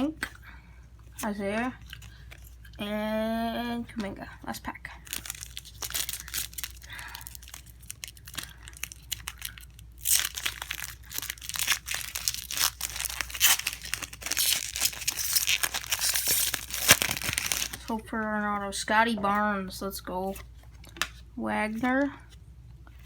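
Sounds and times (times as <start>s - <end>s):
card pack wrapper crinkling: 5.0s - 17.9s.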